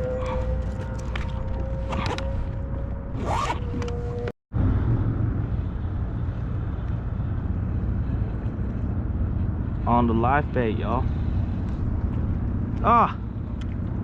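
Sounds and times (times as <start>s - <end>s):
steady low rumble: 0.0s - 14.0s
zipper pulled: 3.2s - 4.3s.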